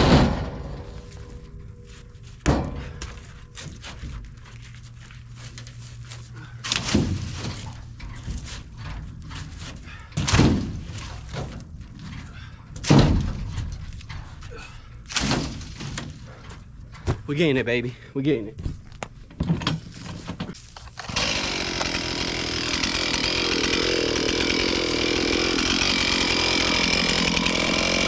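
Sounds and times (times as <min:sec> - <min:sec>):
logs thudding onto a pile: 0:00.0 - 0:01.3, 0:02.3 - 0:04.2, 0:06.6 - 0:12.2, 0:12.8 - 0:14.4, 0:15.1 - 0:17.3.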